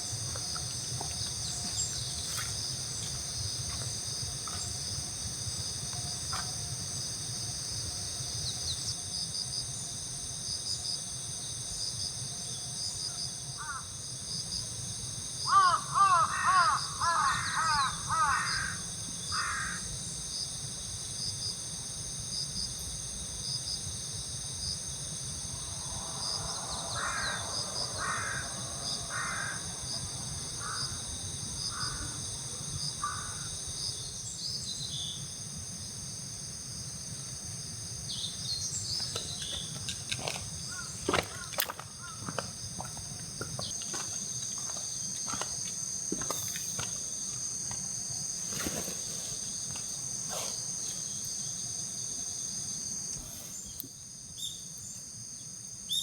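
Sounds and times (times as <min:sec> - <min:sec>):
high insect chorus: 0:00.0 - 0:56.0
crows cawing: 0:13.6 - 0:13.9, 0:15.5 - 0:19.9, 0:25.6 - 0:31.1, 0:31.7 - 0:32.2, 0:33.0 - 0:33.5, 0:40.7 - 0:42.4.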